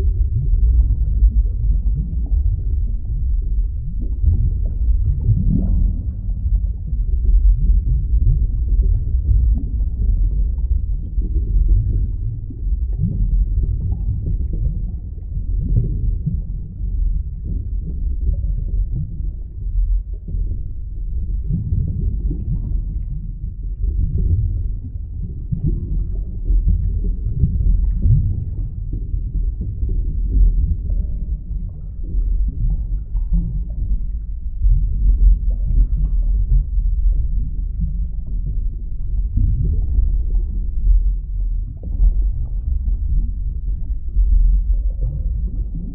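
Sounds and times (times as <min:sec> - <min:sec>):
muffled underwater water rumble: 0:00.0 - 0:45.9.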